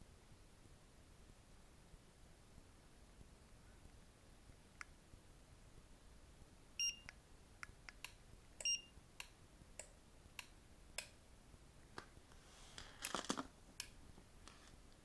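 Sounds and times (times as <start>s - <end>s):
car alarm beeps: 6.8s - 7.1s, 8.6s - 8.9s.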